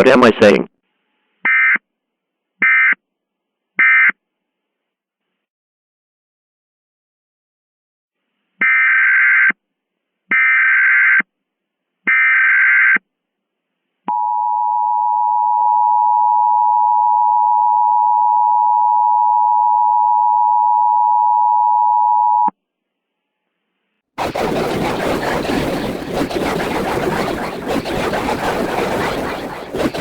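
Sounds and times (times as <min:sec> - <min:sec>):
warbling digital data tone: 0:24.2 - 0:30.0.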